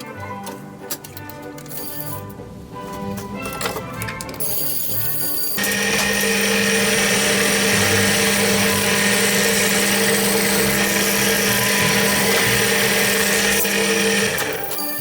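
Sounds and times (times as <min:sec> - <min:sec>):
bench drill motor whirring: 0:05.6 - 0:15.0.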